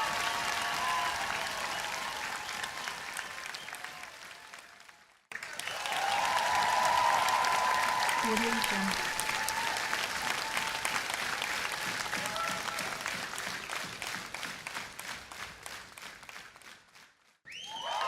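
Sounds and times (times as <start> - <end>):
crowd cheering: 0.0 - 14.8, 17.5 - 18.0
audience applauding: 0.0 - 18.0
crowd voices: 8.2 - 9.2.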